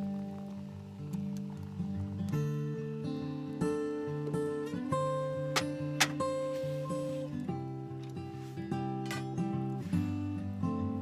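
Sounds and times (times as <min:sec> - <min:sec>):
acoustic guitar strumming: 0:01.8 - 0:08.0.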